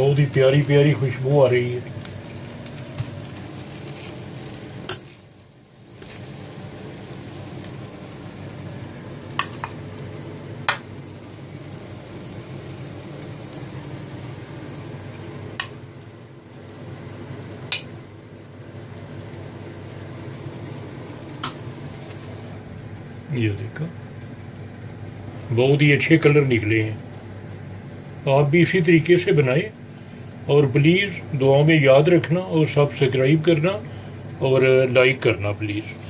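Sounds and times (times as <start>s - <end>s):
low hiss and hum: 0.0s - 36.0s.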